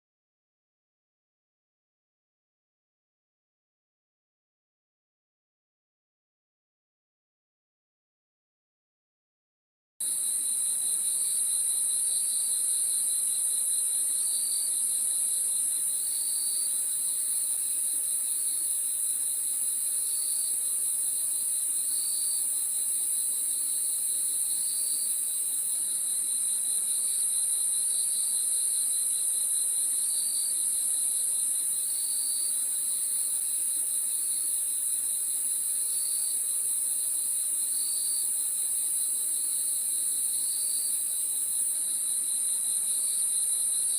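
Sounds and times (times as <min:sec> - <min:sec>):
crickets trilling: 0:10.0 - 0:43.9.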